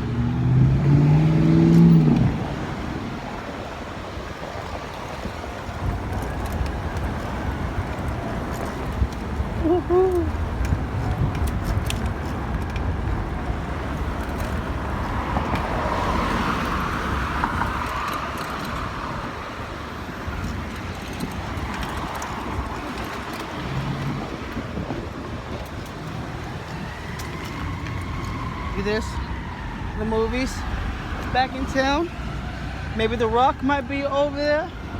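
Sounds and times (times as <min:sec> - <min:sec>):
vehicle passing loudly: 0:00.0 - 0:11.0, 0:13.2 - 0:20.2
road traffic passing: 0:00.0 - 0:34.9.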